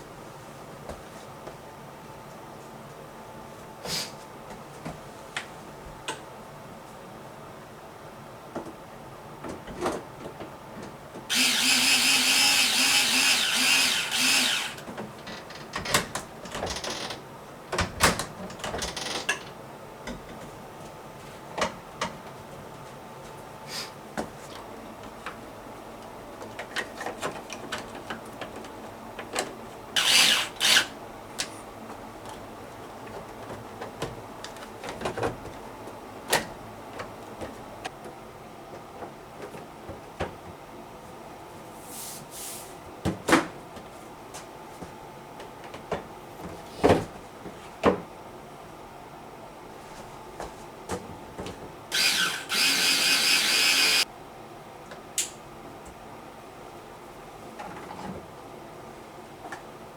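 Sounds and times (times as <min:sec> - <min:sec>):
electric screwdriver running: 0:11.3 - 0:14.8, 0:30.0 - 0:30.9, 0:51.9 - 0:54.0.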